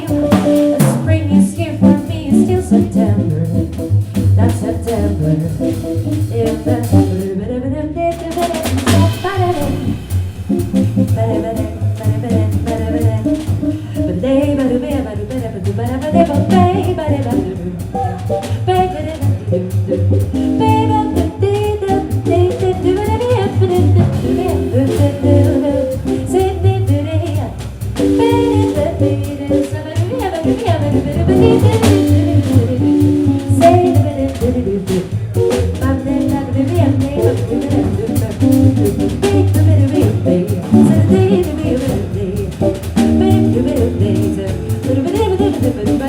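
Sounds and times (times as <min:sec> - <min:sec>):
drum kit with cymbals: 0:00.0 - 0:07.4, 0:08.1 - 0:46.0
double bass line: 0:00.0 - 0:46.0
melodic lead line: 0:08.8 - 0:14.1, 0:31.1 - 0:32.3, 0:40.2 - 0:41.6.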